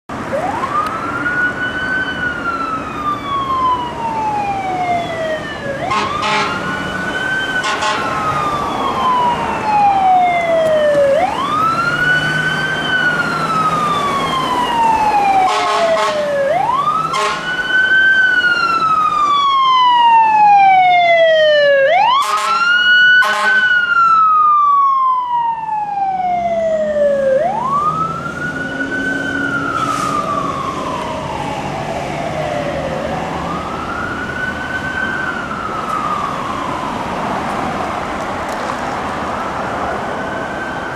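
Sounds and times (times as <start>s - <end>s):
truck engine rumble: 0.1s - 40.9s
mechanical siren wailing: 0.3s - 37.4s
air horn blasts: 5.8s - 6.7s, 7.6s - 8.4s, 15.4s - 16.4s, 17.1s - 17.6s, 22.1s - 23.9s.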